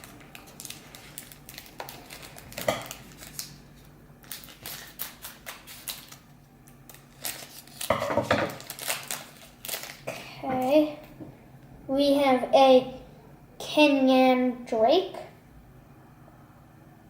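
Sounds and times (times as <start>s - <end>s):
card pack crinkling: 0.0s - 7.9s, 8.5s - 10.1s.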